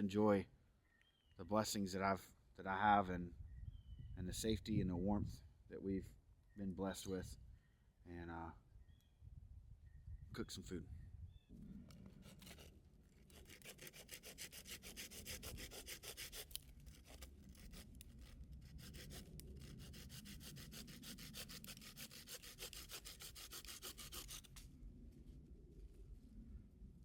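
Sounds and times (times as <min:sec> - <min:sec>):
rapid scraping strokes: 0:13.3 - 0:24.6.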